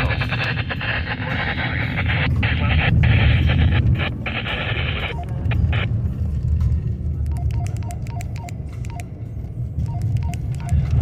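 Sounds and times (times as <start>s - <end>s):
radio static hiss: 0.0s - 5.9s
steady low rumble: 0.0s - 11.0s.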